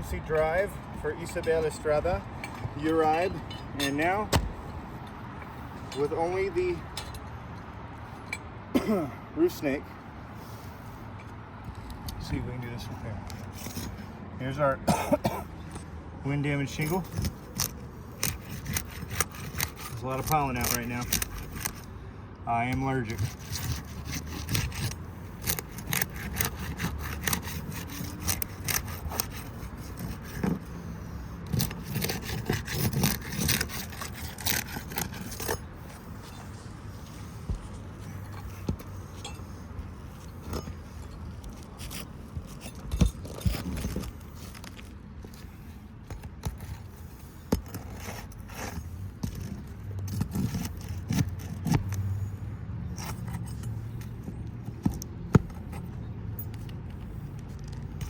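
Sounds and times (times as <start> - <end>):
sharp knocks: 4.3 - 4.6
roof tool scraping shingles: 16.4 - 21.9, 22.5 - 52.3.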